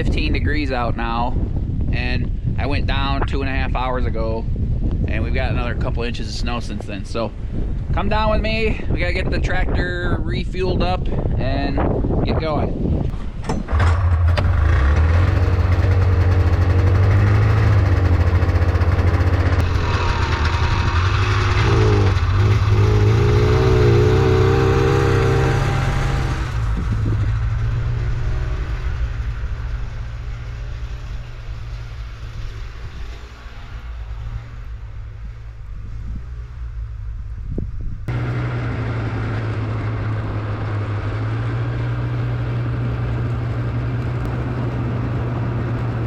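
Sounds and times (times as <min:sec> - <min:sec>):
engine running loudly: 0:13.7 - 0:29.4, 0:38.1 - 0:46.0
wavering whine: 0:15.6 - 0:46.0.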